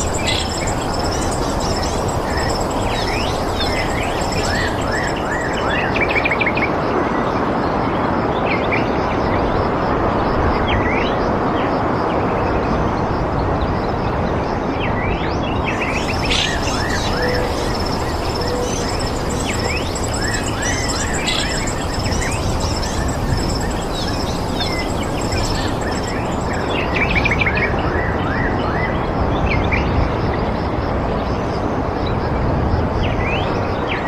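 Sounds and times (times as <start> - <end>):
birds chirping: 0.0 - 6.3, 15.7 - 27.2
high pulsing bird trill: 0.0 - 6.5, 15.7 - 27.4
steady rushing noise: 0.0 - 6.5, 15.6 - 27.6.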